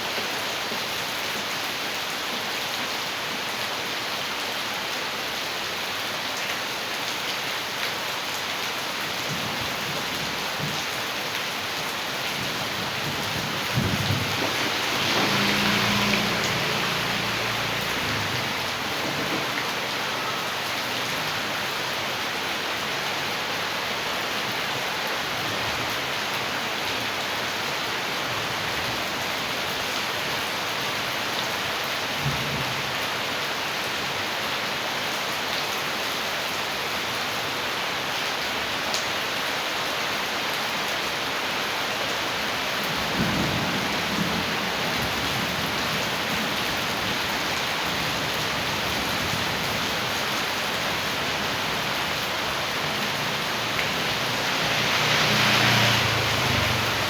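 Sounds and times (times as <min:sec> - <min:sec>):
heavy rain: 0:00.0 - 0:57.0
rushing rainwater runoff: 0:00.0 - 0:57.0.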